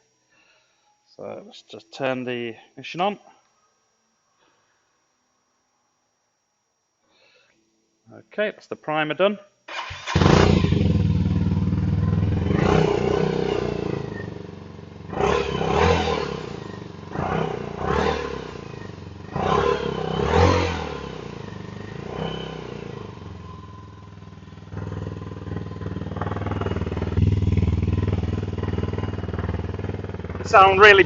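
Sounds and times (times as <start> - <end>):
motorcycle engine revving: 9.7 - 31.0.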